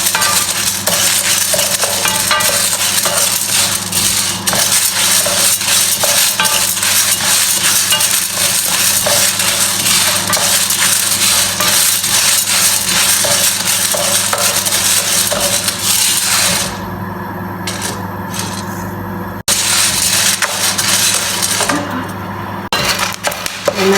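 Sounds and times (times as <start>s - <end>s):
beans scraping and rattling in pan: 0.0s - 16.8s, 17.7s - 18.8s, 19.4s - 21.9s, 22.7s - 23.9s
steady low hum: 0.0s - 23.9s.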